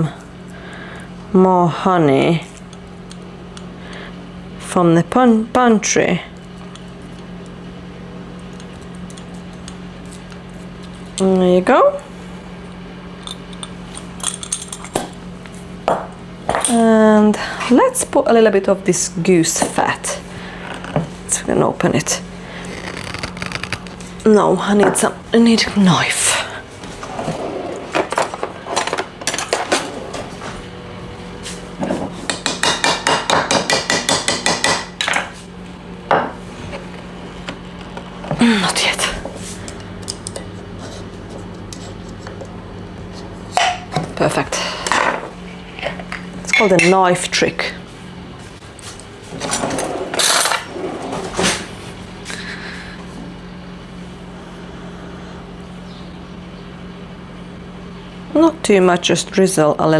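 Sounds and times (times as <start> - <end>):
steady low hum: 0.0 - 59.9
utensils and containers knocking: 31.9 - 35.3.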